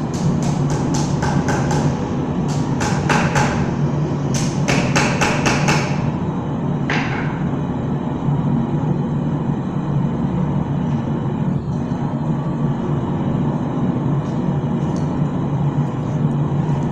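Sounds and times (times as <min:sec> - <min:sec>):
steady low rumble: 0:06.0 - 0:16.9.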